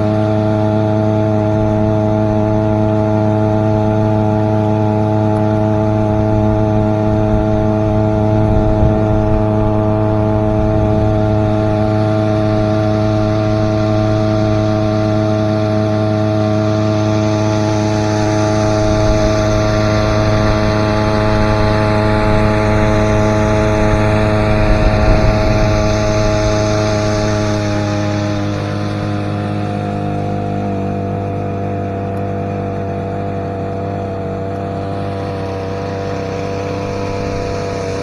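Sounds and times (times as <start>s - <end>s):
boat motor running: 0.0s - 38.0s.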